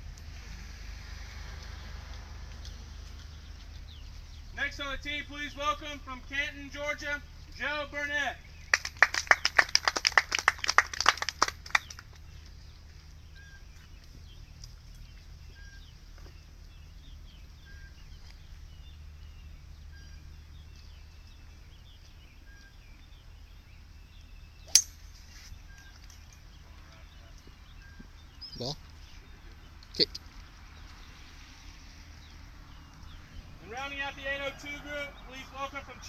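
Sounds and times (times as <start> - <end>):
applause: 8.7 - 12.2
bird chirping: 11.7 - 36.0
golf driver striking ball: 24.7 - 25.1.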